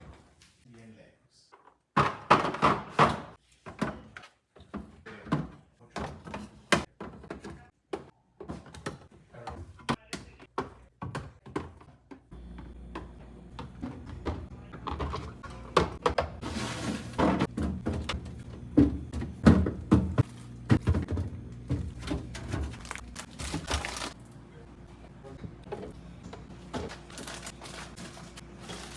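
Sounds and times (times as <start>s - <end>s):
groceries knocking on shelves: 2.0s - 12.3s, 12.9s - 24.2s, 25.6s - 28.9s
fridge hum: 8.4s - 28.9s.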